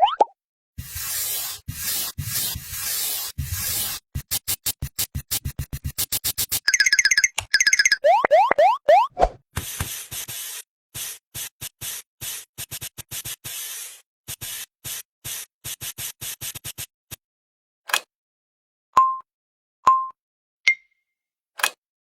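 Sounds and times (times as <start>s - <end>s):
pitched blip: 7.5s - 9.1s.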